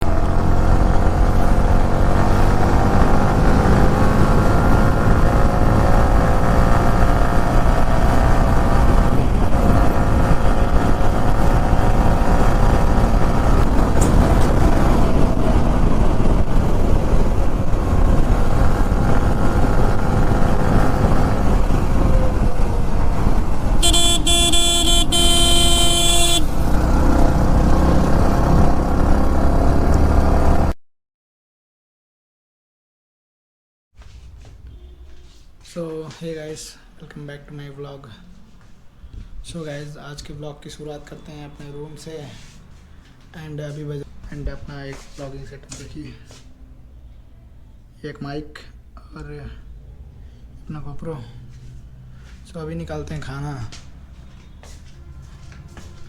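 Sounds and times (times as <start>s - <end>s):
vehicle engine running: 0.0s - 29.7s
loud vehicle horn blast: 23.8s - 26.7s, 34.7s - 35.2s.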